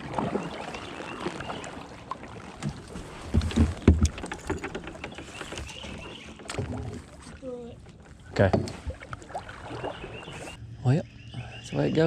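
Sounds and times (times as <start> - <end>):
water swishing off paddle: 0.0 - 7.4, 8.0 - 10.6
knocks against kayak hull: 2.6 - 6.8.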